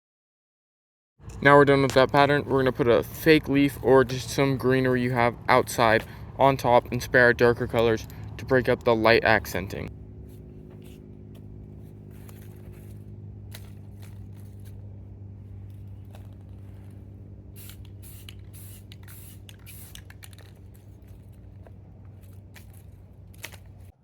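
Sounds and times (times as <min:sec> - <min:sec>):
low hum: 0:01.2 - 0:24.0
spray can hissing: 0:17.6 - 0:20.6.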